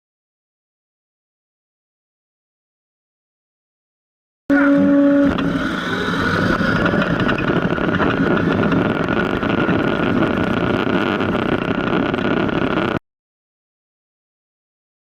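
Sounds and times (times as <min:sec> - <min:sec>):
heavy vehicle engine running: 0:04.5 - 0:13.0
high whine: 0:04.5 - 0:13.0.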